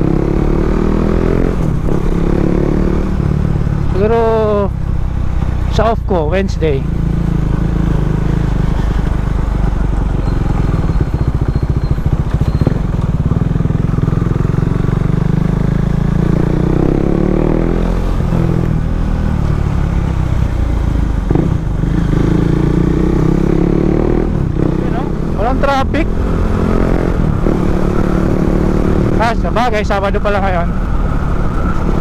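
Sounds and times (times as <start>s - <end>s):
motorcycle engine running: 0.0s - 32.0s
wind rush on microphone: 30.5s - 32.0s.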